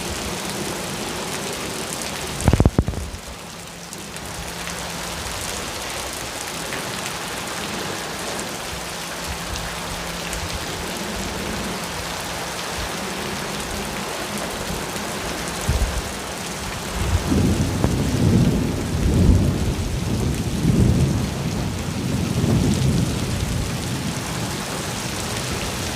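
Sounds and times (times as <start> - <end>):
steady rain: 0.0 - 25.9
thunder rumbling: 15.5 - 25.9.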